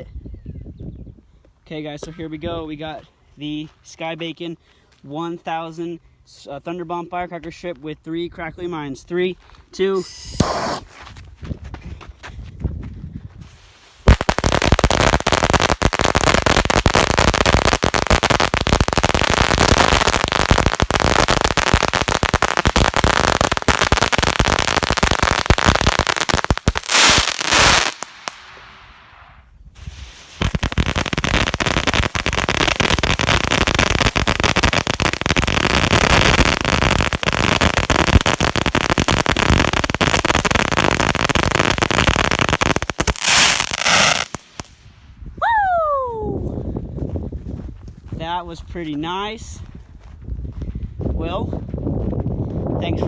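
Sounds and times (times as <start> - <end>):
firecracker string banging: 10.0 - 10.8
dense firework crackling: 13.7 - 44.9.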